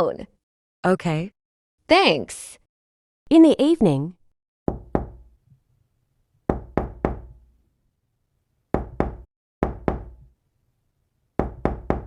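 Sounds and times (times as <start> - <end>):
knocking: 8.8 - 10.2, 11.4 - 12.0.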